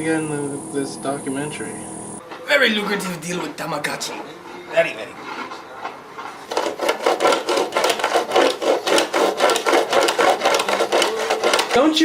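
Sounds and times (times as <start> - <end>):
scraping strokes on wood: 2.3 - 11.8.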